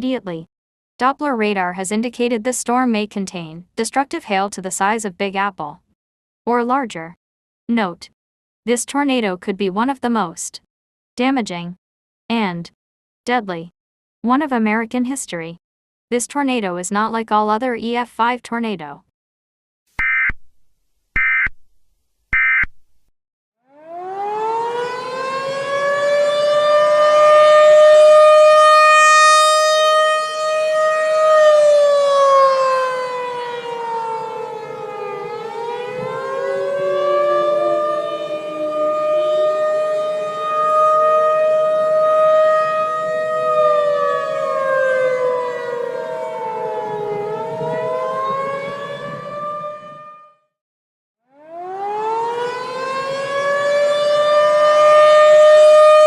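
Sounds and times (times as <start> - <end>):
tornado siren wailing: 23.7 - 50.4, 51.3 - 56.0.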